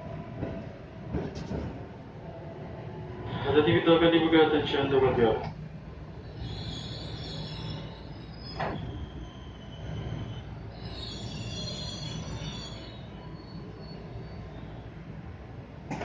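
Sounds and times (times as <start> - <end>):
train low rumble: 0.0 - 16.0
high-pitched wheel squeal: 6.2 - 14.9.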